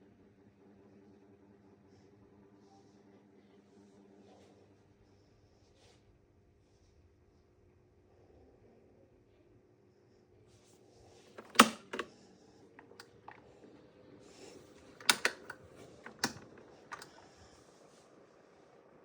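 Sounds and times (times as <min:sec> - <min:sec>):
sharp clicks of fan handling: 0:11.4 - 0:12.1, 0:14.4 - 0:17.6.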